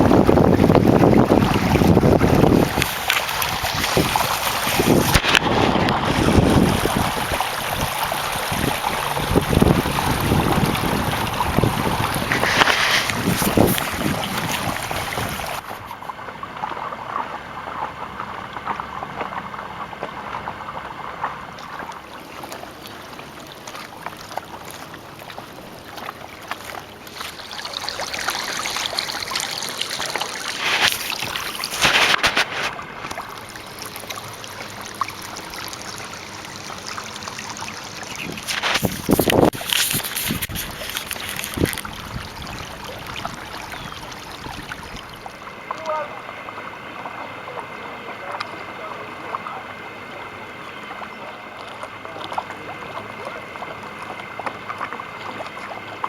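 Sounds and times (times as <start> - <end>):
wind gusts: 0.0 - 16.6, 38.0 - 45.7
water splashing along kayak hull: 0.0 - 56.0.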